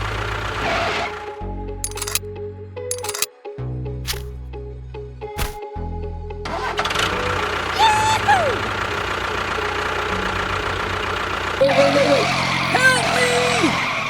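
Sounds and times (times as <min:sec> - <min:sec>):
small engine running: 0:01.8 - 0:02.2, 0:06.5 - 0:14.0.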